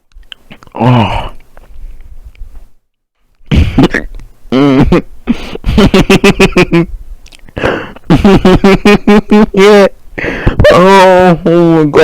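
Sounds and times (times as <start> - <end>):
man yelping wordless outbursts: 9.5 - 10.0, 10.6 - 12.0.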